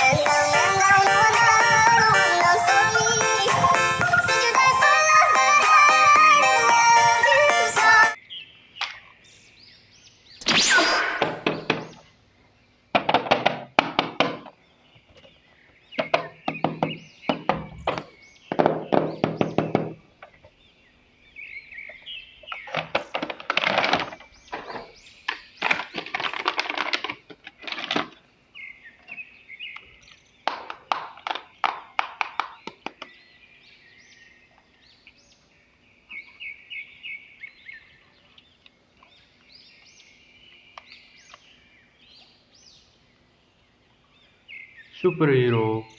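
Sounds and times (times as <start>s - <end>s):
plastic toys clicking and clattering: 22.6s - 28.2s.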